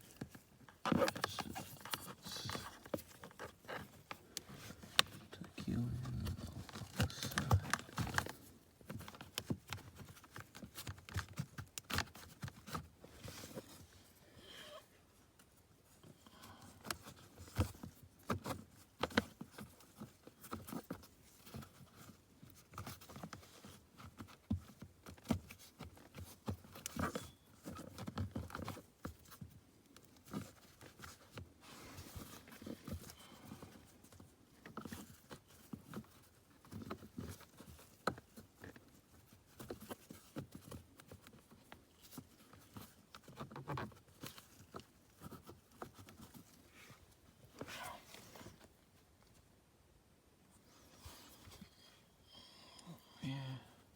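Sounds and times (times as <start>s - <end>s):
hands working cable into plastic trim: 0.0s - 13.8s.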